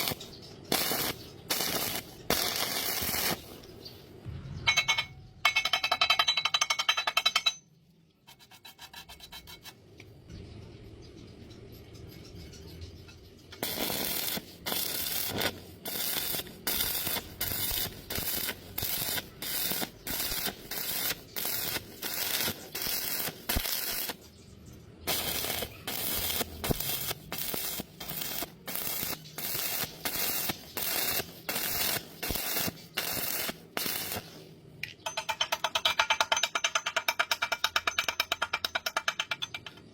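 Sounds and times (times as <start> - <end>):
welding arc crackling: 0.0 - 3.9, 13.5 - 24.4, 25.1 - 34.4.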